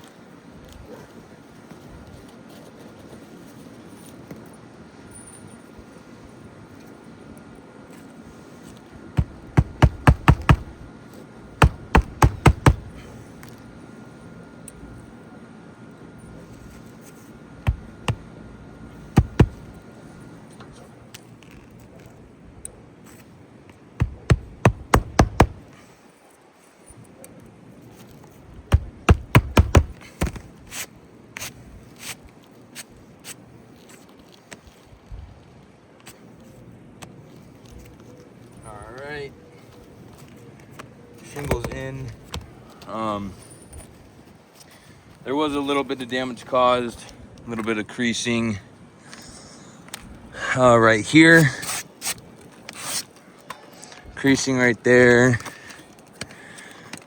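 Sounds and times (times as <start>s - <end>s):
shingle scraping and clicking: 8.6s - 13.6s, 16.5s - 19.9s, 23.0s - 25.7s, 27.8s - 34.8s, 51.6s - 54.1s
hammer striking roofing nails: 9.2s - 10.8s, 11.6s - 13.1s, 17.7s - 18.3s, 19.0s - 19.8s, 24.0s - 25.6s, 28.7s - 30.5s.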